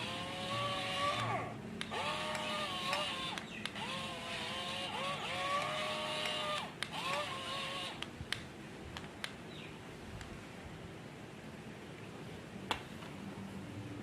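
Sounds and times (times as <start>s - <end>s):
excavator whine: 0.0s - 8.0s
sharp clicks: 1.1s - 9.4s.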